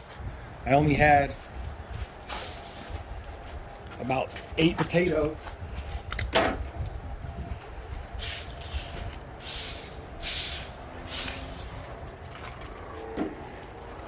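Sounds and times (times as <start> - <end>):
steady low rumble: 0.0 - 14.0
spade scraping in soil: 8.2 - 11.9.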